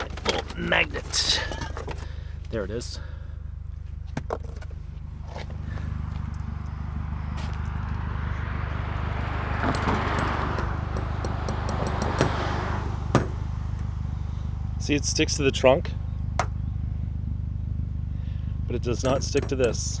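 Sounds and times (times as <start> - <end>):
low engine hum: 0.0 - 20.0
vehicle passing: 5.0 - 14.9.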